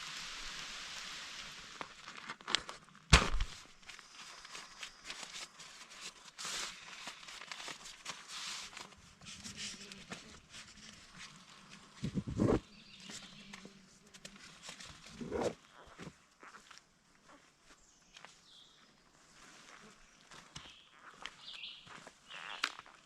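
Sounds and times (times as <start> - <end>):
crinkling and rustling handling noise: 1.7 - 16.7
sharp knock: 3.1 - 3.5.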